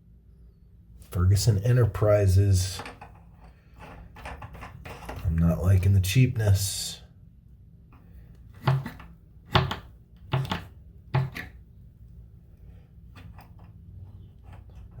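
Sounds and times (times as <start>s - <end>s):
sharp knocks on hard surface: 8.6s - 11.5s.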